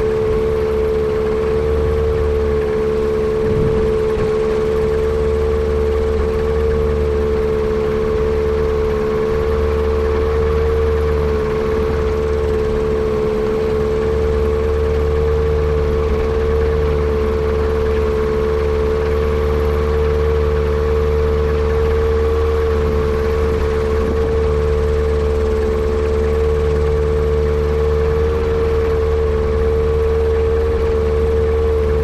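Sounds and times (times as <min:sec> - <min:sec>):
airplane engine drone: 0:00.0 - 0:32.0.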